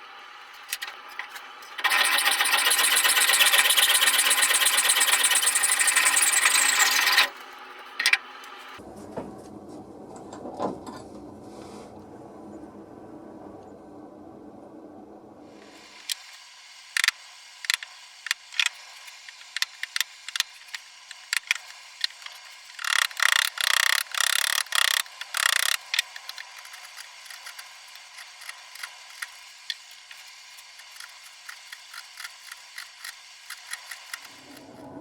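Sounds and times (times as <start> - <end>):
scraping strokes on wood: 1.2 - 7.4, 17.7 - 34.6
rasping strokes on wood: 1.8 - 7.4.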